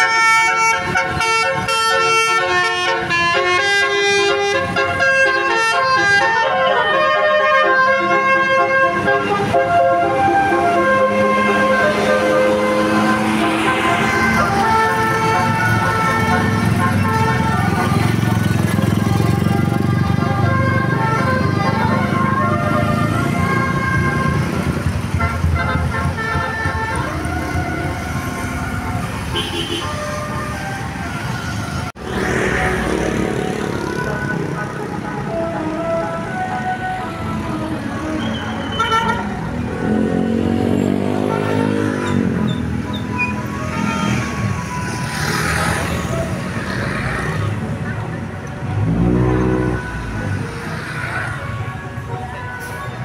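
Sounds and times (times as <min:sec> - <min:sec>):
multi-tone bus horn tune: 0:00.0 - 0:47.7, 0:48.7 - 0:50.8, 0:51.8 - 0:53.0
bus engine rumbling: 0:00.0 - 0:53.0
traffic noise: 0:00.0 - 0:53.0
bus engine revving: 0:39.4 - 0:51.5.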